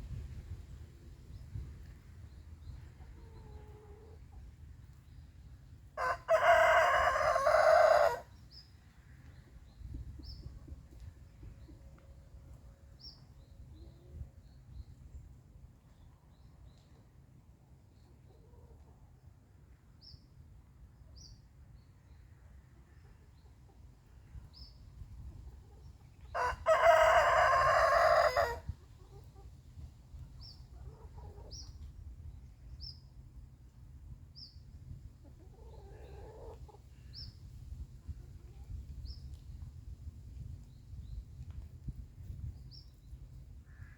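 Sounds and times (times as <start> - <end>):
rooster crowing: 6.0 - 8.3, 26.4 - 28.6.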